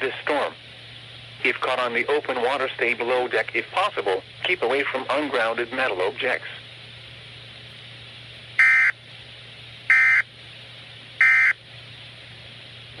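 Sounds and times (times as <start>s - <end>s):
faint steady hum: 0.0s - 13.0s
screeching digital data tone bursts: 8.6s - 8.9s, 9.9s - 10.2s, 11.2s - 11.6s.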